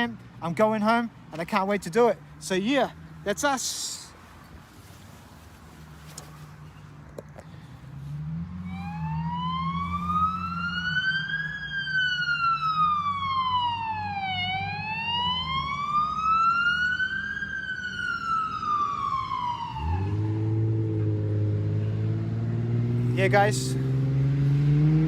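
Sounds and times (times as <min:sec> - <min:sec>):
low engine hum: 0:04.0 - 0:25.0
fire engine siren wailing: 0:08.2 - 0:21.9.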